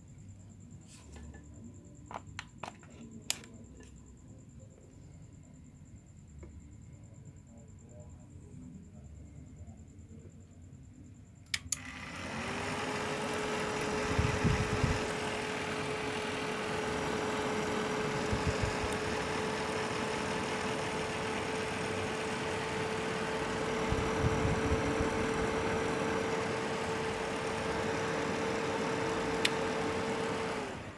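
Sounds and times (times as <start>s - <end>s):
cooling fan whirring: 11.4s - 30.9s
power switch clicks: 11.5s - 11.9s, 29.4s - 29.7s.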